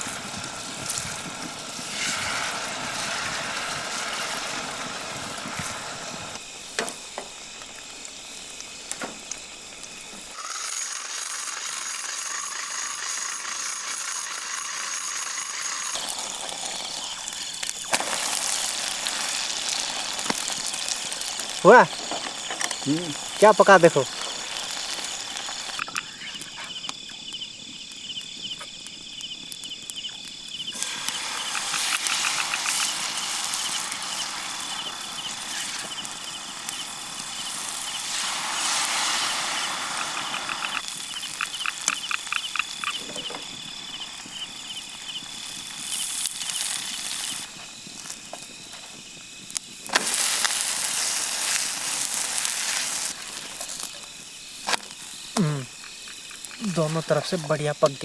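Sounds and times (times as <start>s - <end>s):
food frying in hot oil: 0.0s - 58.0s
high insect trill: 0.0s - 58.0s
rapid chirping: 20.8s - 43.0s.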